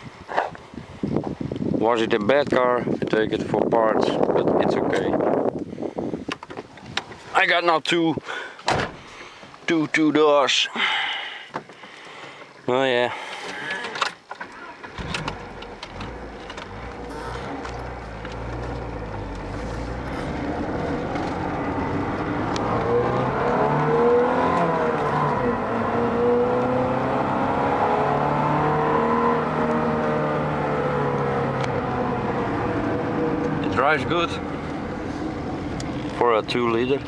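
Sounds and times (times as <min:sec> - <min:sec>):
car engine driving: 0:13.2 - 0:37.0.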